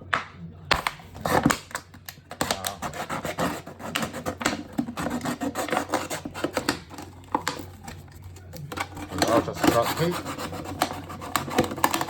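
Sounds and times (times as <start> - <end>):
blade rasping through material: 2.4 - 7.6, 8.8 - 12.0.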